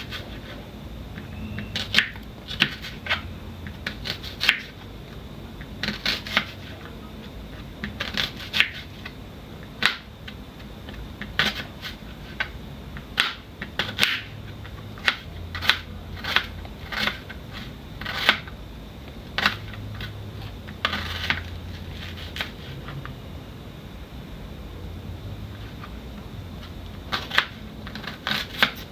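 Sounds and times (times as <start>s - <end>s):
knife chopping on cutting board: 3.8s - 4.8s, 7.8s - 8.8s, 13.2s - 14.3s.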